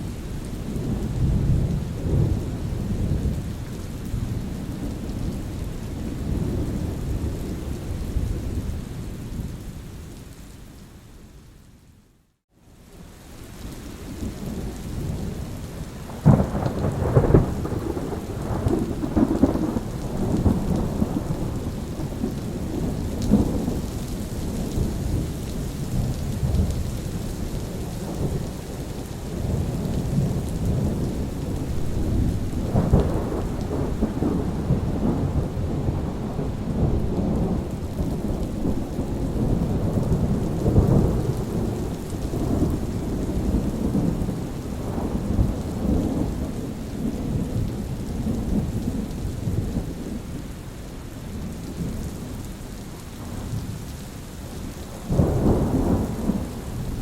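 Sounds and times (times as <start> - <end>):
rain falling: 0.0 - 57.0
thunder rolling and cracking: 16.1 - 23.8, 29.3 - 50.2, 55.0 - 57.0.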